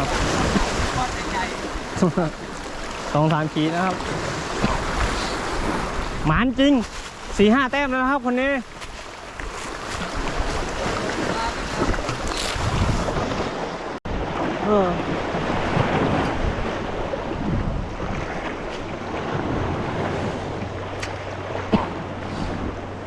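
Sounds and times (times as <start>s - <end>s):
surf on rocky shore: 0.0s - 23.0s
wind buffeting microphone: 9.8s - 23.0s.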